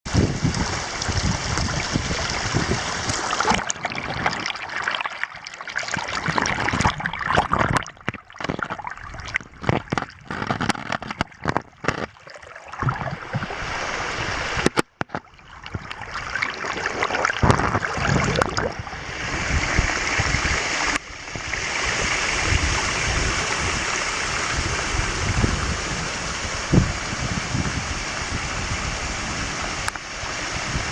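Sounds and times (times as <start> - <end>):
wind on microphone: 0.0 - 4.6, 5.9 - 30.9
waterfall rushing: 11.9 - 14.8.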